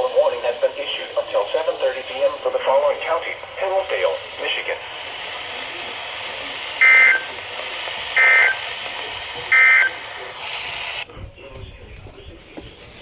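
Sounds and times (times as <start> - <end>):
steady radio hiss: 0.0 - 13.0
two-tone digital data bursts: 6.8 - 7.3, 8.2 - 8.6, 9.5 - 10.0.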